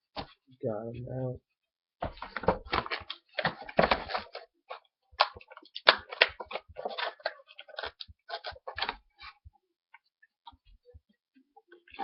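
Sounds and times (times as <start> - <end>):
plastic packaging crinkling: 5.2 - 9.3.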